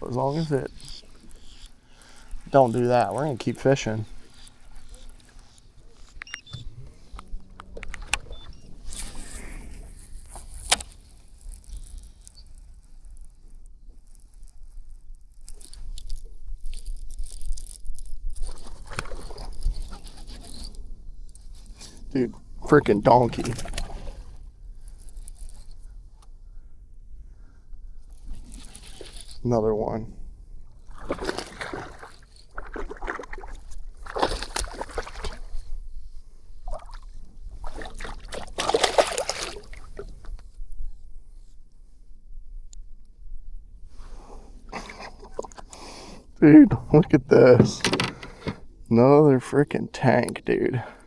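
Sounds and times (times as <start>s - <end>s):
fish thrashing and splashing water: 30.9s - 35.6s, 36.7s - 40.1s
microphone handling rustling: 45.2s - 48.9s.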